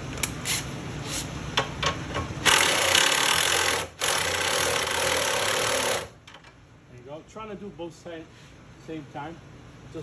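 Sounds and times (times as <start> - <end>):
power drill rasping whir: 2.5 - 6.2.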